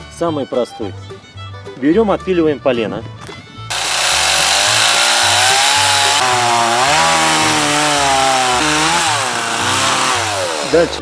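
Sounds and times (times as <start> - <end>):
chainsaw sawing through log: 3.7 - 11.0.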